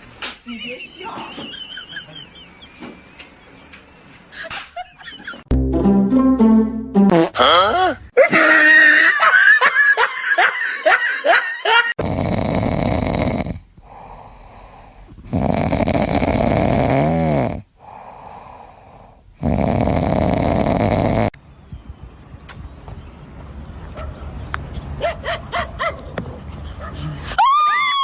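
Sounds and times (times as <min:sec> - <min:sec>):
heavy snoring: 0:12.0 - 0:21.4.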